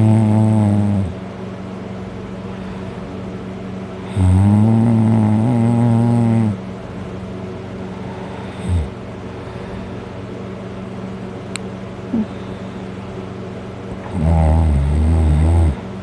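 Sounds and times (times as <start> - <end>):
man snoring loudly: 0.0 - 1.1, 4.0 - 6.6, 8.4 - 8.9, 14.0 - 15.8
steady low hum: 0.0 - 16.0
man snorting: 12.1 - 12.8.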